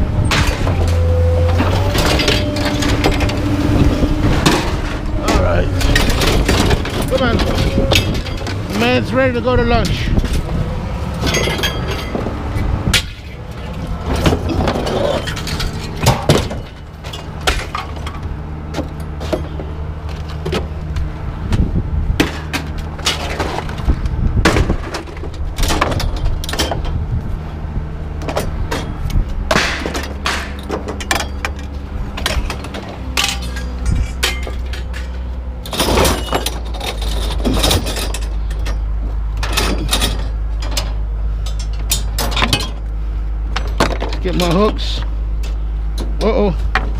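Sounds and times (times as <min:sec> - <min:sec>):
engine humming: 0:00.0 - 0:46.9
scrap metal clanking onto pile: 0:00.2 - 0:09.0, 0:11.2 - 0:12.3, 0:12.9 - 0:18.2, 0:22.2 - 0:23.8, 0:28.7 - 0:38.8, 0:39.4 - 0:42.8.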